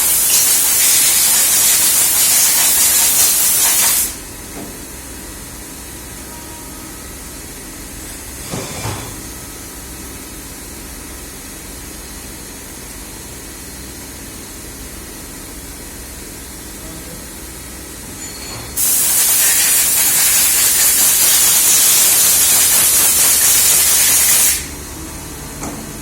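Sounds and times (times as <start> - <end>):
loud hissing spray: 0.0 - 4.2, 18.8 - 24.8.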